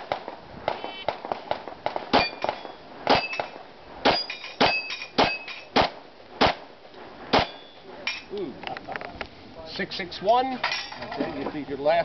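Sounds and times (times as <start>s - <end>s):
pistol shots: 0.0s - 6.7s, 7.3s - 7.7s
steel plate ringing: 2.2s - 5.7s.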